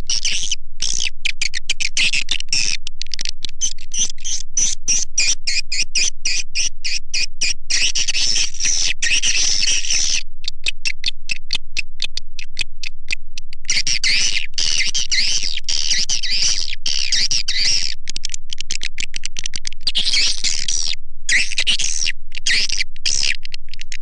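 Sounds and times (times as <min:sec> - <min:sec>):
rapid sharp bird clicks: 0:00.9 - 0:04.7, 0:10.4 - 0:14.9, 0:15.7 - 0:20.2, 0:22.3 - 0:24.0
high twittering bird chirps: 0:03.6 - 0:11.2, 0:13.7 - 0:18.0, 0:19.8 - 0:23.3.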